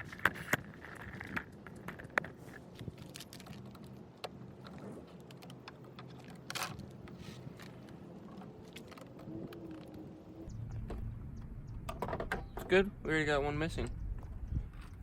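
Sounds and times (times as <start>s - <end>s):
low rumble: 10.4s - 15.0s.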